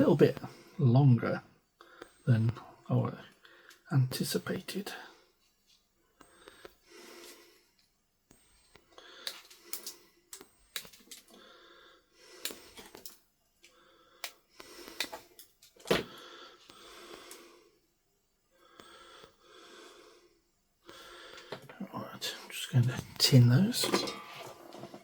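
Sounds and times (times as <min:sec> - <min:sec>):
man breathing wheezily: 0:06.2 - 0:07.8, 0:08.5 - 0:13.0, 0:16.0 - 0:17.8, 0:18.5 - 0:21.7
small tools clicking: 0:09.2 - 0:11.4.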